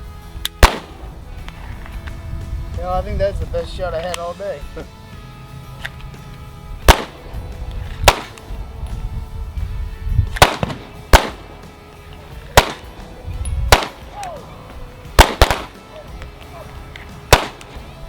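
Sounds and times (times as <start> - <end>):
background music: 0.0 - 18.0
gunshots: 0.6 - 1.1, 6.8 - 7.4, 8.0 - 8.5, 10.4 - 11.7, 12.5 - 13.1, 13.7 - 14.1, 15.2 - 15.8, 17.3 - 17.8.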